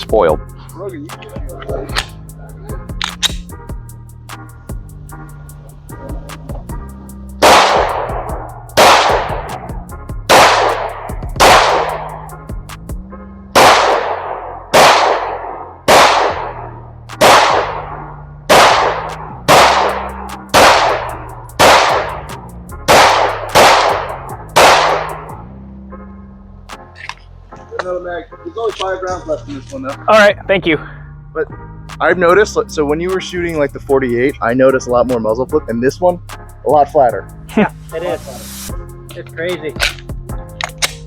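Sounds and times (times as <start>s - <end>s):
pistol shots: 7.4s - 9.5s, 10.3s - 12.2s, 13.6s - 22.2s, 22.9s - 25.3s.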